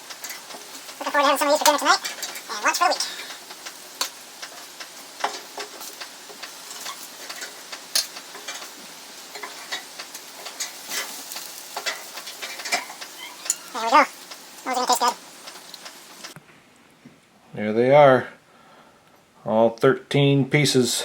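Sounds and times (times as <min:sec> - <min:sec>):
faint sizzle: 0:00.0 - 0:16.4.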